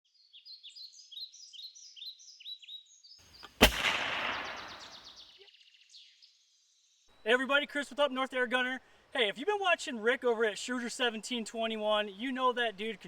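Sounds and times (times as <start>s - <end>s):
small birds chirping: 0.1s - 8.4s
air pistol firing: 3.4s - 5.1s.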